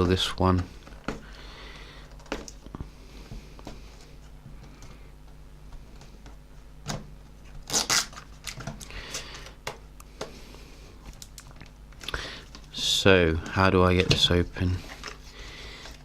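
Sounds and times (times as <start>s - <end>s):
seal peeling off cardboard box: 7.6s - 8.6s.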